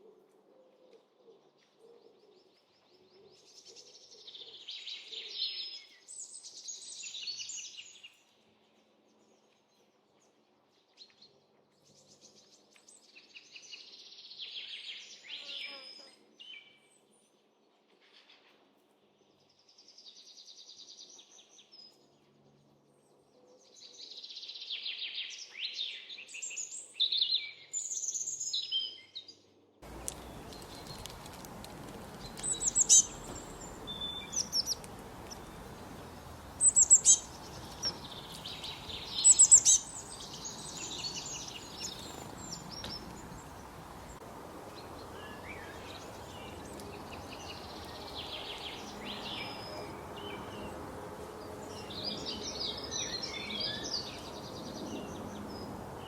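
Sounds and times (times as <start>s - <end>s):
songbirds chirping: 19.0s - 56.0s
steady outdoor hiss: 29.8s - 56.0s.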